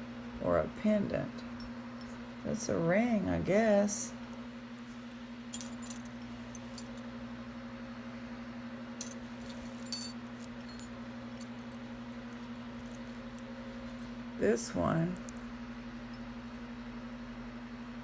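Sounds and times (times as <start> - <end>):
low electrical hum: 0.0 - 18.0
metal jewelry clinking: 5.5 - 7.0, 9.0 - 14.1.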